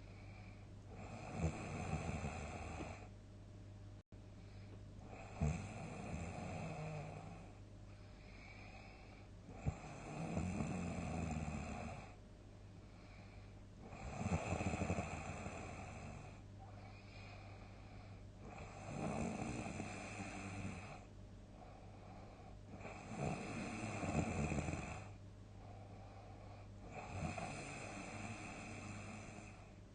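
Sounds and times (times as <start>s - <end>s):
person snoring heavily: 0.9s - 3.1s, 5.0s - 7.5s, 8.4s - 12.2s, 13.8s - 16.4s, 18.4s - 21.1s, 22.7s - 25.2s, 26.8s - 29.7s.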